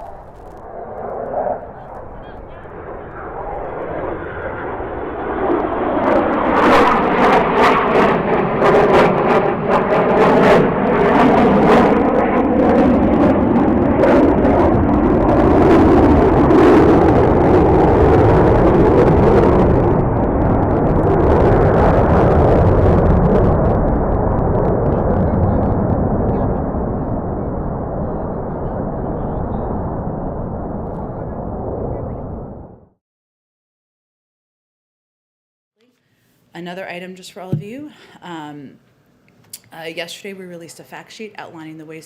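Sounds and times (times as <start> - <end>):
jet roar with crackle: 0.0 - 32.8.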